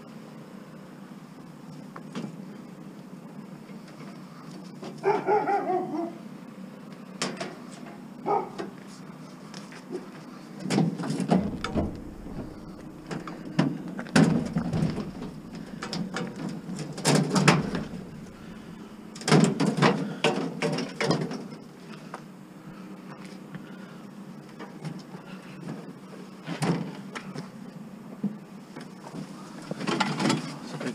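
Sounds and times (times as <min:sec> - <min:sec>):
scrap metal clanking: 0:11.3 - 0:19.8.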